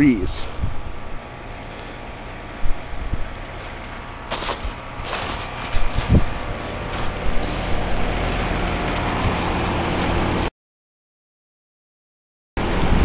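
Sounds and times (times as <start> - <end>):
heat pump humming: 0.0 - 10.5, 12.6 - 13.0.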